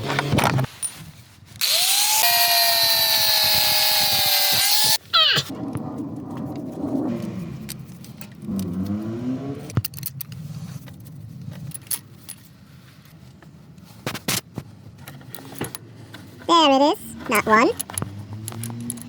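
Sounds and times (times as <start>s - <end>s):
small metal parts clinking: 9.7s - 10.4s, 17.7s - 19.0s.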